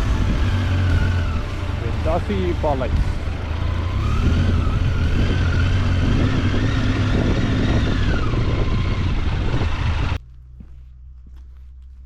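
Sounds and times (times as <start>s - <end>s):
vehicle engine and road rumble: 0.0s - 12.0s
wind noise: 4.1s - 10.8s.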